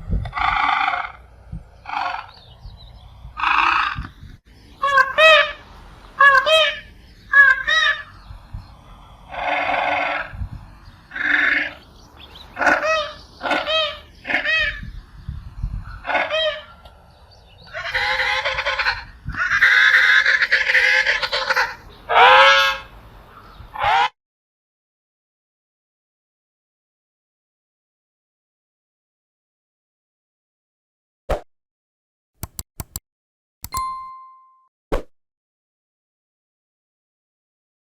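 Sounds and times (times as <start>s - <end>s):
penguin braying calls: 4.8s - 5.6s, 6.2s - 8.1s, 12.6s - 14.8s, 17.7s - 22.9s
penguin honking calls: 4.8s - 5.6s, 6.2s - 8.1s, 12.6s - 14.8s, 17.7s - 22.9s.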